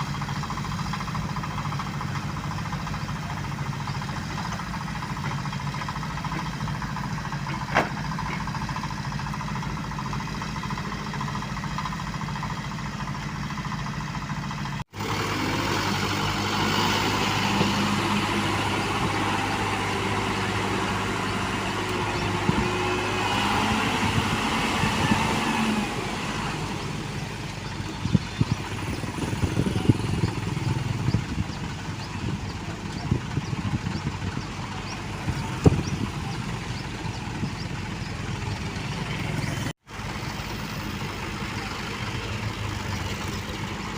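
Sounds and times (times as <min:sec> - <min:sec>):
diesel machinery engines running: 0:00.0 - 0:43.9
knocks and clatters: 0:07.4 - 0:08.6.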